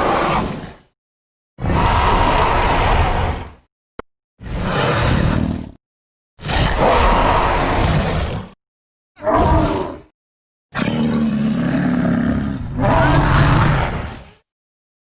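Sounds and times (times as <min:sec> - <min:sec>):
monster roars: 0:01.6 - 0:03.6, 0:06.4 - 0:08.6, 0:09.2 - 0:10.1, 0:10.8 - 0:14.4.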